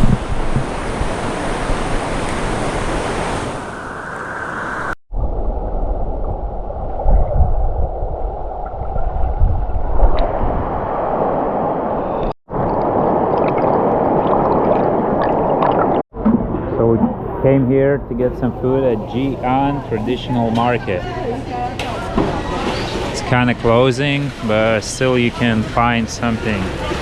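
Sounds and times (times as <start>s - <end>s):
rushing river water: 0.0s - 3.8s, 22.6s - 27.0s
low steady rumbling: 12.6s - 27.0s.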